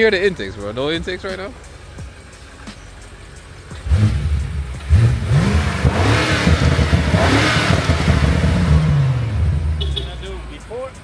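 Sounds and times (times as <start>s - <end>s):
car engine revving: 2.6s - 10.8s.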